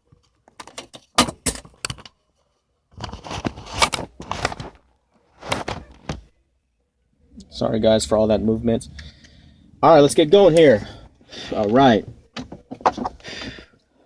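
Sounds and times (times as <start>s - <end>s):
rustling and clattering: 0.0s - 6.3s, 12.1s - 13.3s.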